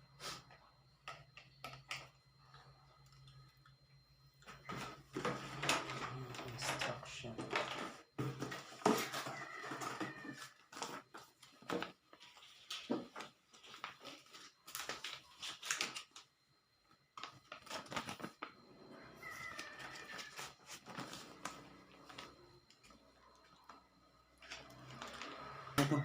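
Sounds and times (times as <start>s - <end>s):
plastic and cardboard rustling: 4.6s - 16.3s, 17.2s - 18.6s, 19.2s - 22.9s.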